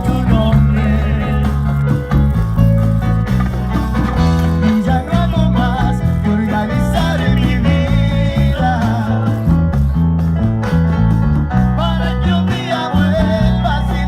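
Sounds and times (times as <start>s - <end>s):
lead vocal singing: 0.0s - 2.0s, 4.4s - 9.8s, 11.6s - 14.0s
bass line: 0.0s - 14.0s
guitar: 0.0s - 14.0s
latin band music: 0.0s - 14.0s.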